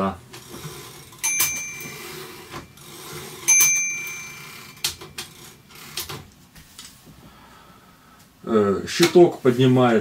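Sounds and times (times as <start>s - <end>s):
typewriter bell ding: 1.2s - 5.7s.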